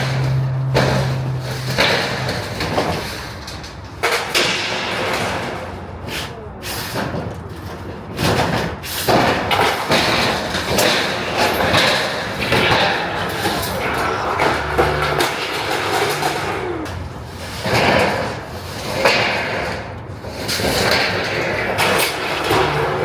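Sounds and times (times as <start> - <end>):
demolition thumps and bangs: 0.0 - 6.0, 6.9 - 18.4
paneling scraping: 0.0 - 23.0.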